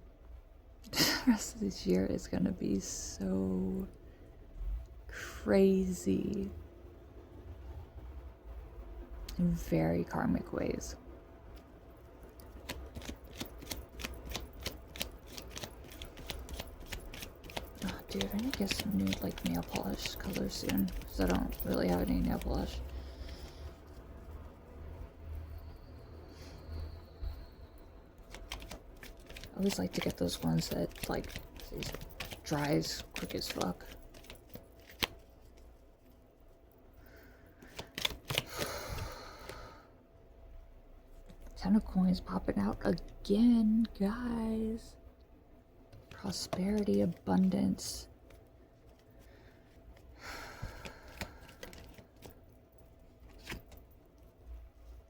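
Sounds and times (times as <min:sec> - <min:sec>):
cards being shuffled: 0:12.4 - 0:23.6, 0:28.2 - 0:35.8, 0:37.6 - 0:39.6, 0:45.9 - 0:47.6, 0:50.6 - 0:52.5, 0:53.2 - 0:54.0.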